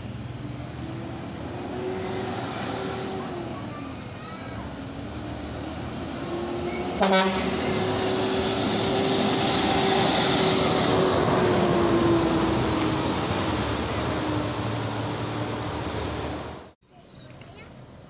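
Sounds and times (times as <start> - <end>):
bus engine driving past: 0.0 - 17.0
short horn toot: 7.0 - 7.7.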